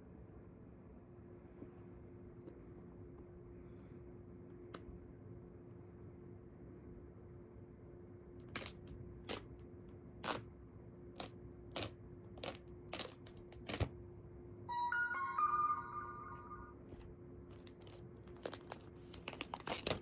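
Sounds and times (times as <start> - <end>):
bright stepped melody: 14.7 - 17.0
packaging rustling scrapes: 17.6 - 20.0.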